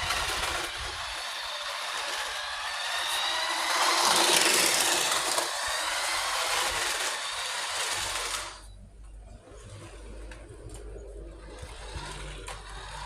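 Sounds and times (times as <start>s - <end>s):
toy car electric motor whirring: 0.0s - 8.7s, 11.3s - 13.0s.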